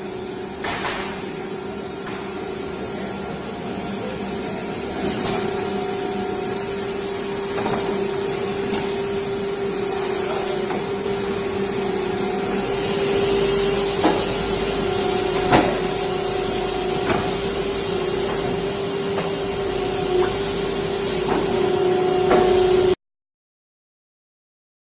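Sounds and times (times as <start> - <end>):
cnc router humming: 0.0 - 23.0.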